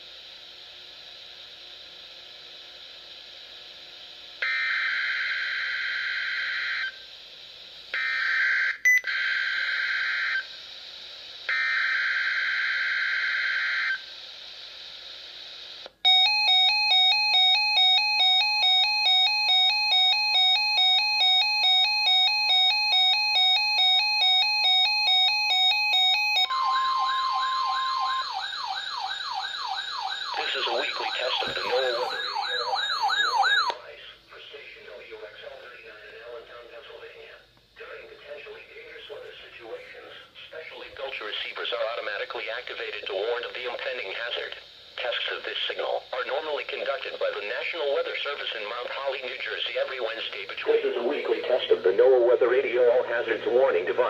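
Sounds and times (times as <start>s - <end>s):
warbling electronic alert: 26.4s - 33.7s
radio hiss: 30.4s - 32.9s, 33.7s - 54.0s.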